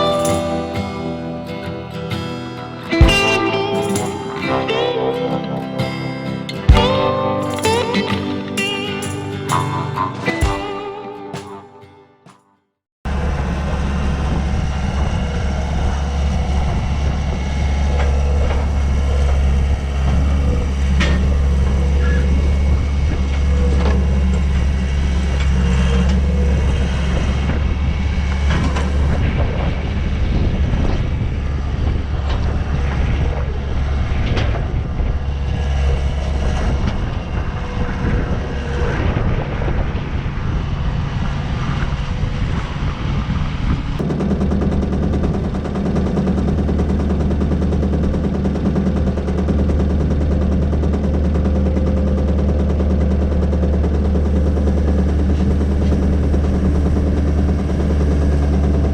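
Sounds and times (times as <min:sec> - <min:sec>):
engine running steadily: 0:13.1 - 0:58.9.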